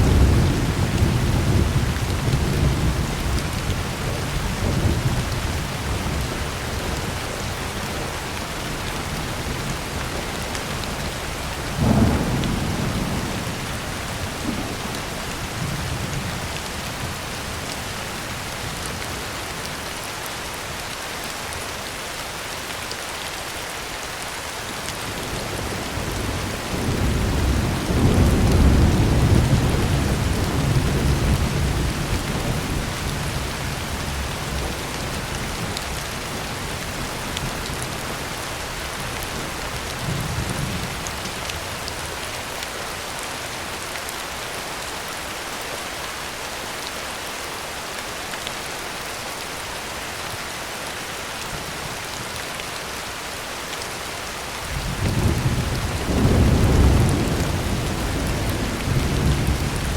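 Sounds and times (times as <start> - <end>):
heavy rain on a tin roof: 0.0 - 59.9
thunder rumbling: 11.7 - 16.4, 54.7 - 59.9.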